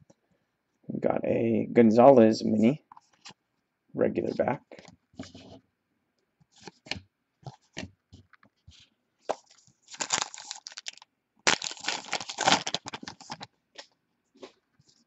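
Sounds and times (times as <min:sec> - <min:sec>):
card pack wrapper crinkling and tearing: 0:09.4 - 0:13.5.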